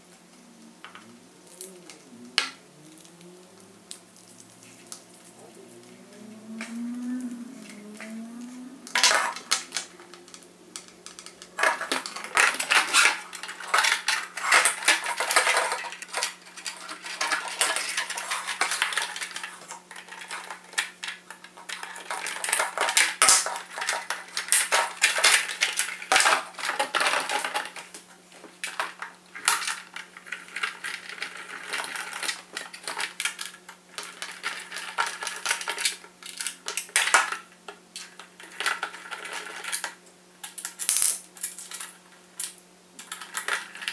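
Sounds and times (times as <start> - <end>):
faint low hum: 0.0 - 19.5
small hard objects clinking: 0.8 - 43.9.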